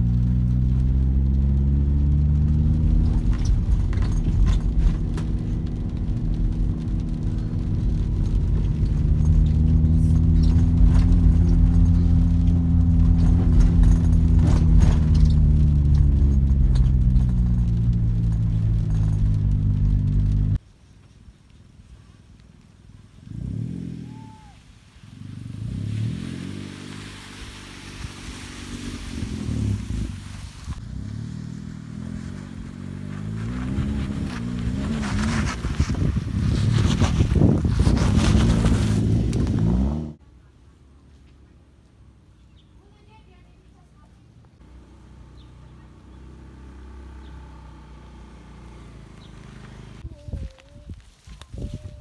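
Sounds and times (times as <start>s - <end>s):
vehicle engine running: 0.0s - 20.6s, 25.1s - 42.4s, 43.3s - 51.1s
loud thumps: 2.4s - 20.6s.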